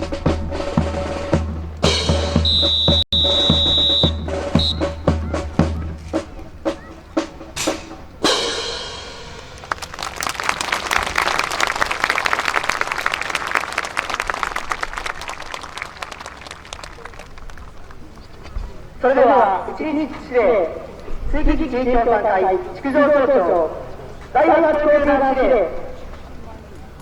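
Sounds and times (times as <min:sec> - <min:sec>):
sharp drum beats: 0:00.0 - 0:09.6
crowd applauding: 0:09.4 - 0:18.3.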